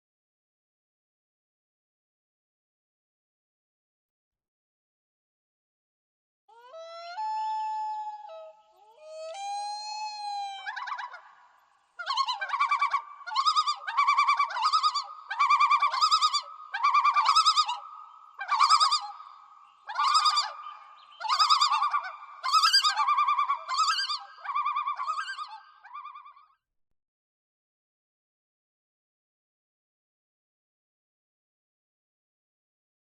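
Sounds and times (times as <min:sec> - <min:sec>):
loon tremolo call: 0:06.6 - 0:11.2.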